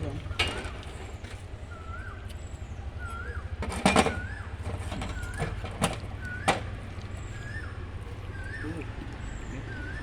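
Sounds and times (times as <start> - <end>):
bird whistled call: 1.6 - 5.6, 7.3 - 10.0.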